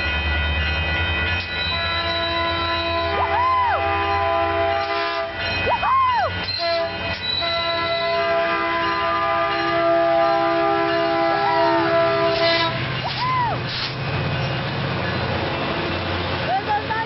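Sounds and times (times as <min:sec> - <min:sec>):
train horn long blast: 0:01.8 - 0:05.4, 0:06.5 - 0:12.8.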